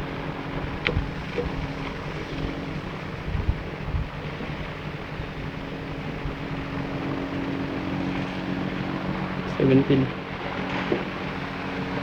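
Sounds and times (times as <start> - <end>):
steady mechanical hum: 0.0 - 12.0.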